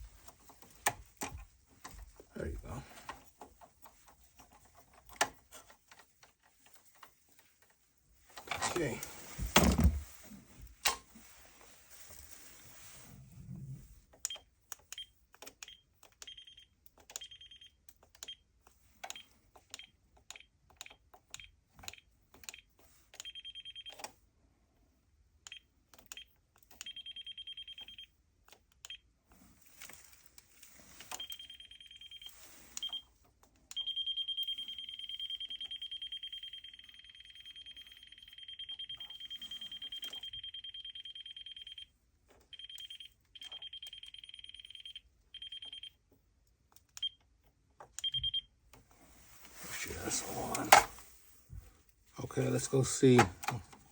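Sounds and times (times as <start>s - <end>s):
voltage detector beeping: 15.0s - 17.8s, 23.2s - 24.0s, 26.2s - 28.1s, 31.1s - 33.1s, 33.8s - 41.9s, 42.5s - 46.0s, 48.0s - 48.5s.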